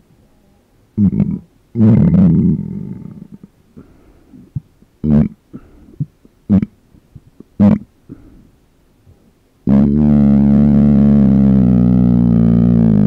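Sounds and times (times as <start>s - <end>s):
short closed-mouth burps: 1.0s - 3.1s, 5.0s - 6.8s
long low droning burp: 1.0s - 3.4s, 5.0s - 5.7s, 7.6s - 8.3s, 9.7s - 13.0s.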